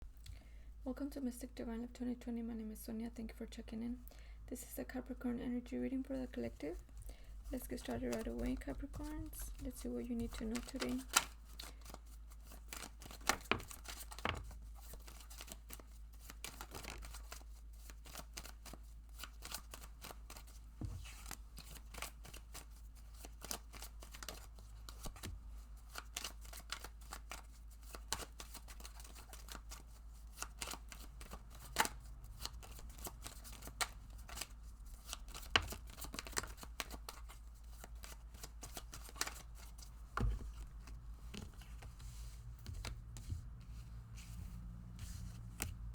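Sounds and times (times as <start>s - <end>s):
low steady hum: 0.0s - 11.4s, 39.4s - 45.9s
cards being shuffled by hand: 6.2s - 45.9s.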